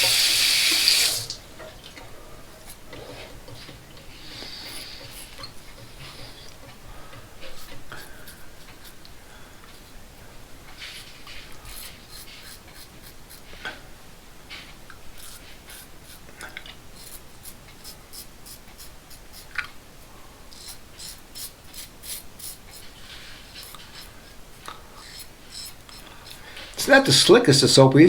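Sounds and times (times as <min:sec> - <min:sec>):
razor scraping stubble: 0:02.6 - 0:10.0, 0:10.7 - 0:13.6, 0:14.6 - 0:19.8, 0:20.5 - 0:27.2.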